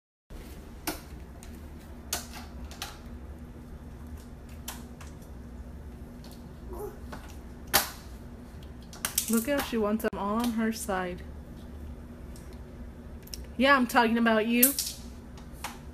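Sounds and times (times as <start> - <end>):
steady low hum: 0.3 - 15.9.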